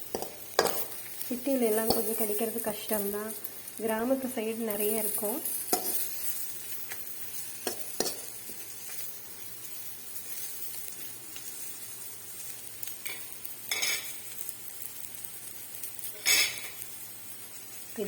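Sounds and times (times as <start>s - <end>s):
spoon scraping a pan: 0.0s - 3.1s, 4.7s - 9.2s, 13.0s - 14.2s, 16.0s - 16.8s
food sizzling in hot oil: 0.0s - 18.0s.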